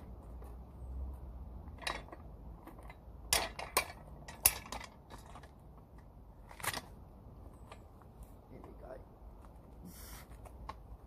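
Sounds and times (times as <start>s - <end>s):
metal parts clicking and clunking: 1.6s - 7.0s.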